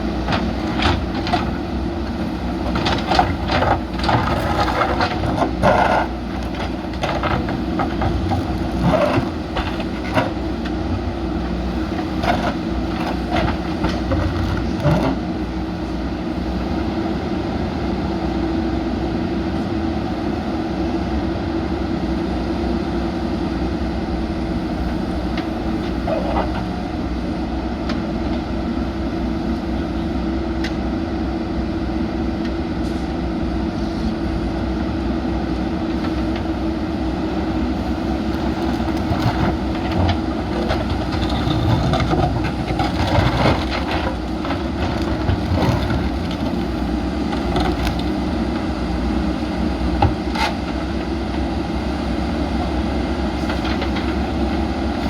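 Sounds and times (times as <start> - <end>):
short knocks and scrapes: 0.0 - 15.3, 37.7 - 48.7, 49.9 - 51.1, 53.3 - 54.4
diesel engine running: 0.0 - 20.6, 22.0 - 30.4, 31.2 - 55.0.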